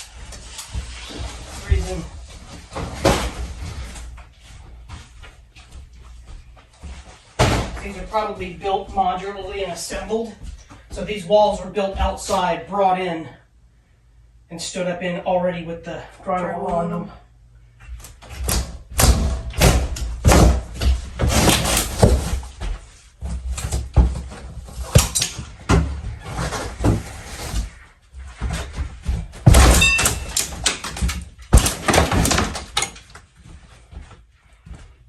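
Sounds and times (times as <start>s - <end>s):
demolition knocks bangs and crashes: 1.3s - 3.9s, 7.4s - 8.3s, 18.3s - 33.2s.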